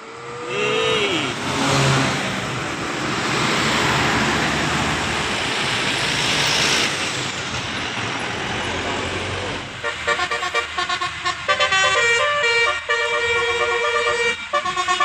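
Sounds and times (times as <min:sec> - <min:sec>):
bus driving past: 0:00.0 - 0:14.1
person shouting: 0:00.2 - 0:01.5.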